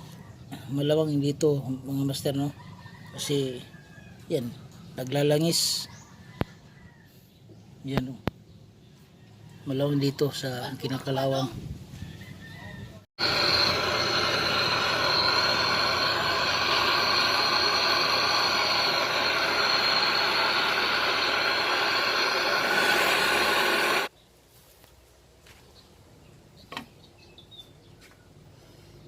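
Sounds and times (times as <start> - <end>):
gas hissing with high whistle: 13.2 - 24.1.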